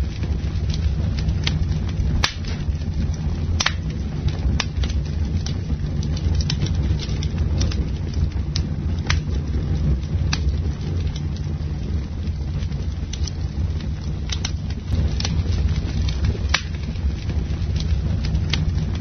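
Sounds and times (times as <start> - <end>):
campfire wood crackling and popping: 0.0 - 19.0
low fire rumble: 0.0 - 19.0.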